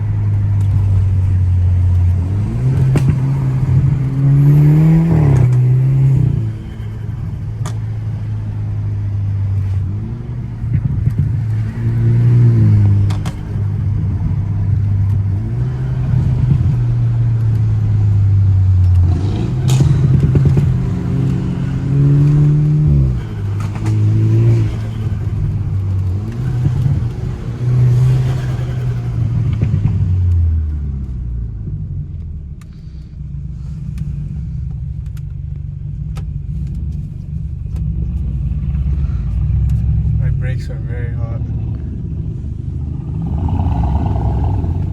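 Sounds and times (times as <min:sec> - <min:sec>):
car engine revving through gears: 0:00.1 - 0:30.7, 0:41.4 - 0:44.9.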